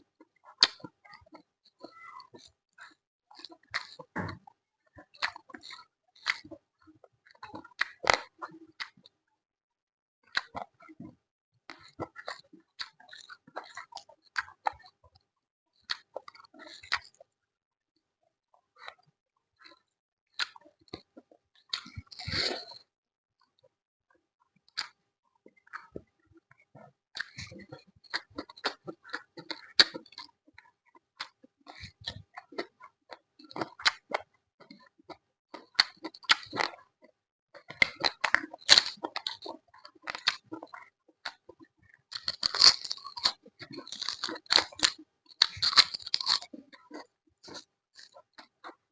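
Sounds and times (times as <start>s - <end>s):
person chewing food: 0.0s - 9.2s, 10.3s - 17.4s, 18.0s - 23.8s, 24.5s - 48.9s.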